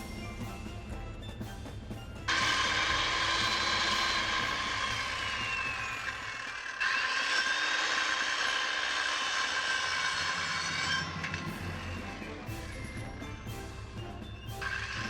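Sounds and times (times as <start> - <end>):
electric tool motor whining: 2.3 - 12.3.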